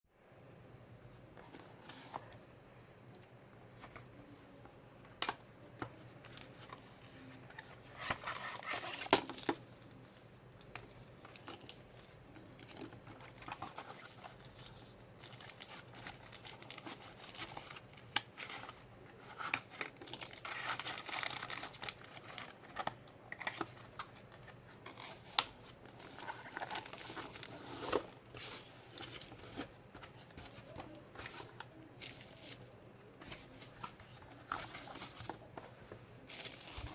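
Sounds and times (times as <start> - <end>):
wrapping crinkling and rustling: 6.2 - 36.9.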